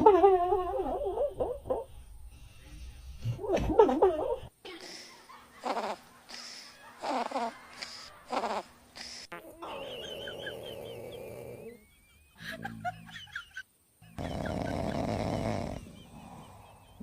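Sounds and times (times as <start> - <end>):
dogs snoring: 5.6 - 8.7, 9.6 - 11.9, 14.2 - 17.0.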